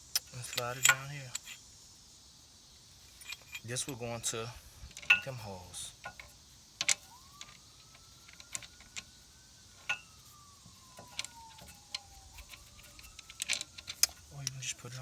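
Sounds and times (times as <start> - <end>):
metal tool clicking and clinking: 0.2 - 1.6, 3.1 - 9.1, 9.8 - 10.3, 10.9 - 14.7
faint siren rising and falling: 6.8 - 15.0.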